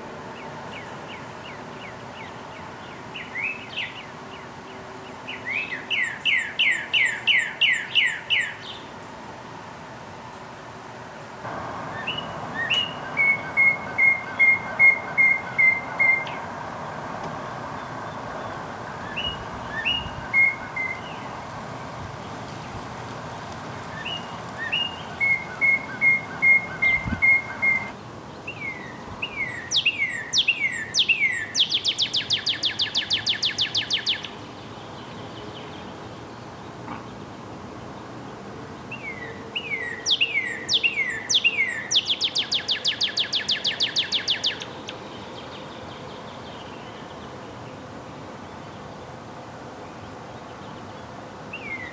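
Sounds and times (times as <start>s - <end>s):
bird whistling song: 5.4s - 8.8s, 11.8s - 16.6s, 17.4s - 21.4s, 23.9s - 34.3s, 38.9s - 44.7s.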